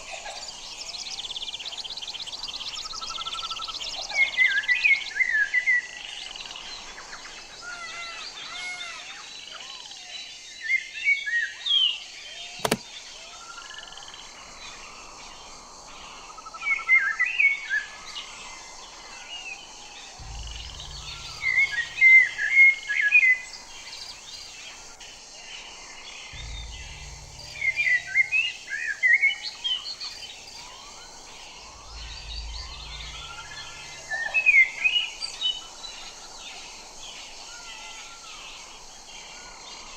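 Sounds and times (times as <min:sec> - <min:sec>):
sharp click: 0:12.6 - 0:12.9, 0:20.2 - 0:22.2.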